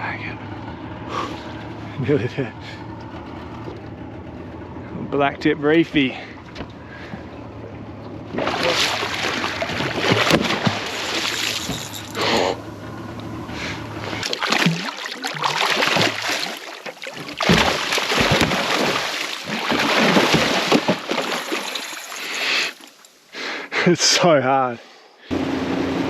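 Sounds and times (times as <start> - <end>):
low steady hum: 0.0 - 22.1
water splashing against boat: 2.8 - 12.5, 13.7 - 23.0.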